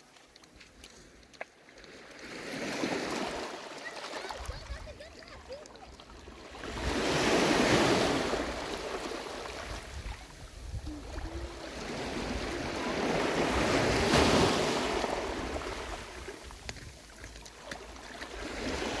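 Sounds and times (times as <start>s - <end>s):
sea waves breaking: 1.5s - 19.0s
wind buffeting microphone: 6.1s - 17.3s.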